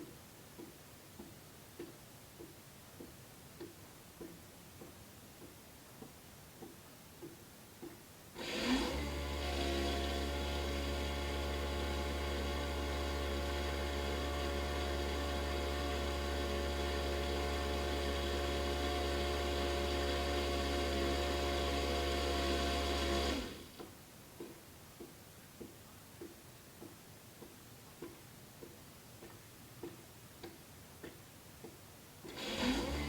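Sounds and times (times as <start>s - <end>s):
dishwasher pump motor humming: 8.4s - 23.8s, 32.2s - 33.0s.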